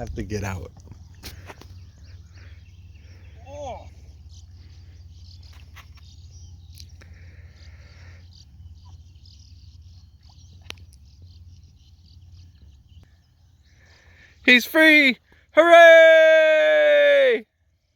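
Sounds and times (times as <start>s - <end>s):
faint high chirps: 1.9s - 14.3s.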